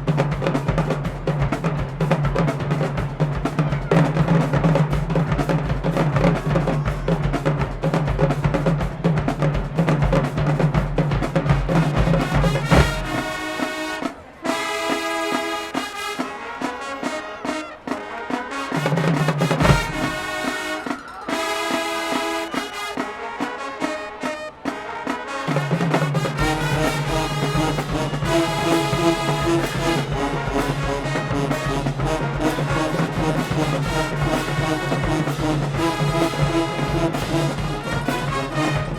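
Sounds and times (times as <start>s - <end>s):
brass chords: 0.0s - 38.9s
drums: 0.0s - 38.9s
low brass bass line: 11.9s - 14.0s, 26.2s - 38.9s.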